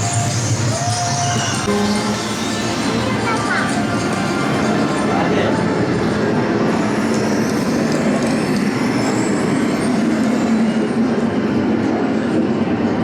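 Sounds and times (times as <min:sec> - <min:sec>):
loud steady rumble: 0:00.0 - 0:06.9.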